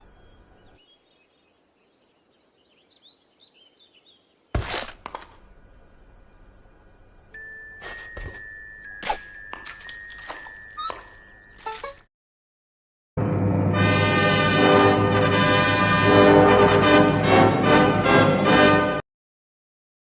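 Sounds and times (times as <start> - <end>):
faint high tinkling chirps: 0.0 - 4.2, 5.5 - 12.0.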